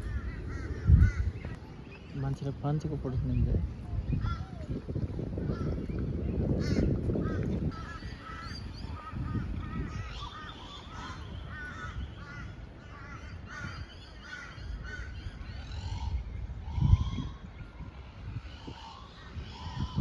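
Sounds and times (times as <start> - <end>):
flock of birds calling harshly: 0.0 - 1.6, 6.6 - 20.0.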